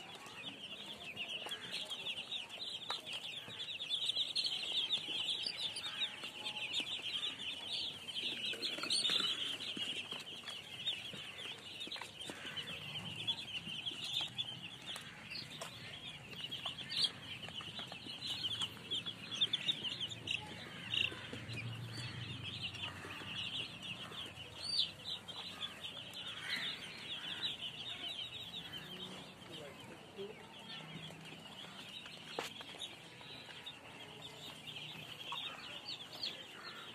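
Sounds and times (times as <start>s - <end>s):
baby chicks peeping: 0.0s - 36.9s.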